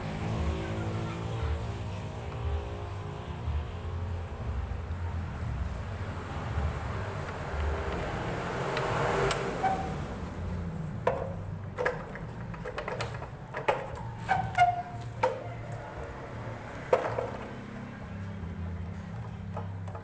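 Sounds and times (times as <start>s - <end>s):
tools knocking on metal: 11.0s - 15.9s, 16.8s - 17.8s.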